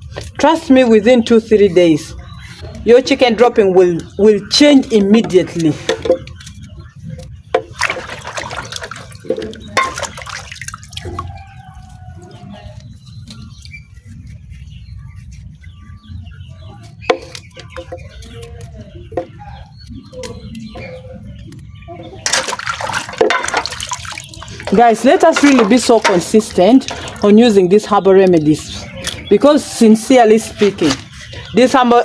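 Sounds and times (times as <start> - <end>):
drips and clicks: 4.9 - 11.7, 17.1 - 29.3
chickens clucking: 5.2 - 32.0
water splashing: 7.6 - 11.5, 22.2 - 27.7.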